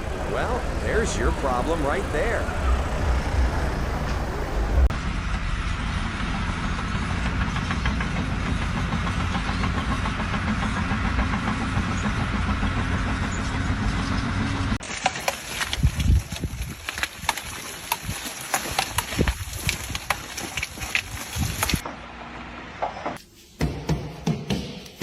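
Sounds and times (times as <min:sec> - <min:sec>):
large engine running: 0:00.0 - 0:14.8.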